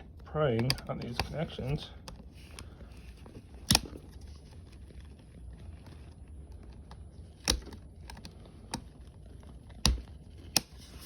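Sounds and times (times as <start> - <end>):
plastic and metal clicks: 0.5 - 2.7.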